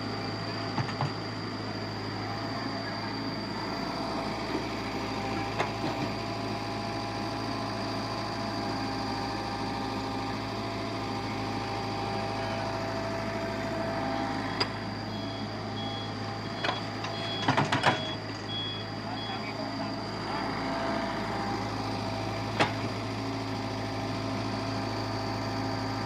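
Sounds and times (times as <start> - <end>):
construction machinery engine running: 0.0 - 26.0
truck reversing beeper: 1.4 - 26.0.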